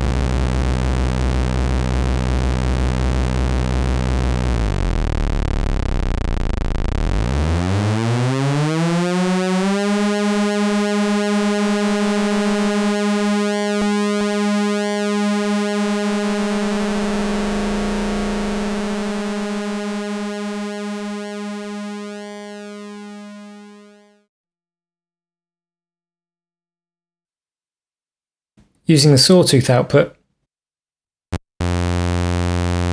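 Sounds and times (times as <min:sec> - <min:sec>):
buzzy synthesizer tone: 0:00.0 - 0:24.2, 0:31.4 - 0:32.9.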